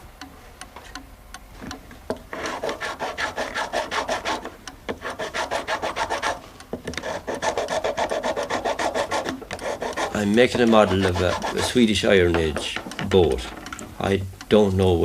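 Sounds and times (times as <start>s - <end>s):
hand rasp on wood: 2.3s - 6.4s, 7.0s - 13.0s.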